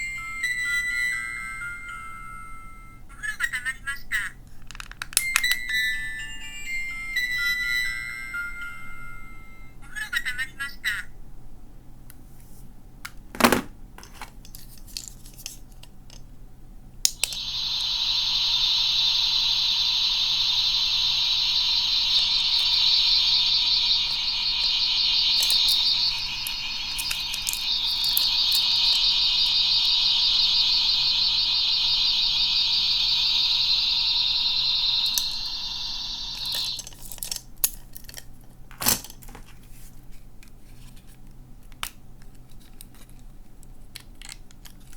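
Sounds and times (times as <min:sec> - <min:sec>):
high-pitched electronic alarm tone: 0:00.0 - 0:03.0, 0:05.4 - 0:09.8, 0:17.2 - 0:37.0
sharp click: 0:18.5 - 0:35.6.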